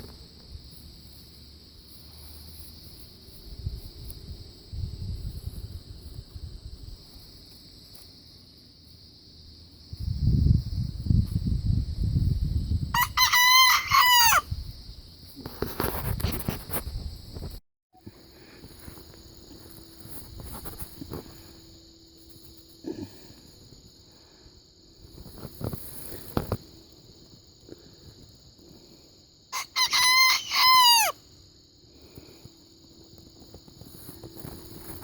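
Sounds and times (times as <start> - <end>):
rooster crowing: 12.9 - 14.5, 29.5 - 31.2.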